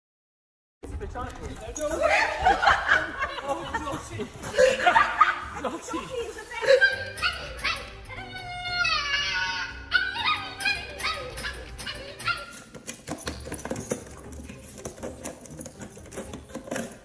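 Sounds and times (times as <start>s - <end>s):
dog crying out: 6.6s - 12.7s.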